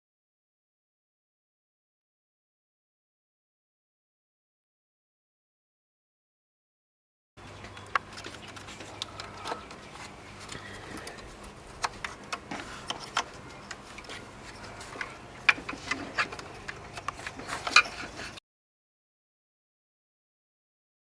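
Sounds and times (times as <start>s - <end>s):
faint steady hum: 7.4s - 18.4s.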